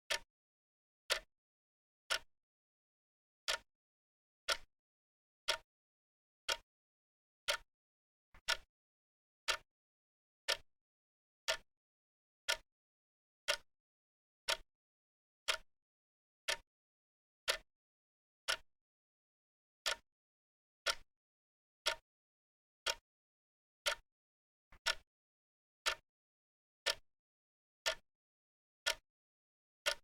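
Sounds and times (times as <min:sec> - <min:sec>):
wrist watch ticking: 0:04.5 - 0:04.7, 0:05.5 - 0:05.7, 0:06.5 - 0:06.7, 0:07.5 - 0:07.7, 0:08.4 - 0:08.7, 0:11.5 - 0:11.7, 0:13.5 - 0:13.7, 0:14.5 - 0:14.7, 0:16.5 - 0:16.7, 0:18.5 - 0:18.7, 0:22.8 - 0:23.0, 0:25.8 - 0:26.0, 0:26.8 - 0:27.0, 0:28.8 - 0:29.0.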